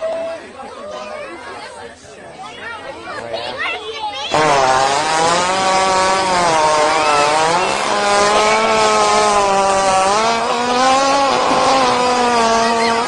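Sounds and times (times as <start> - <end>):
hippopotamus farting: 4.3 - 13.0.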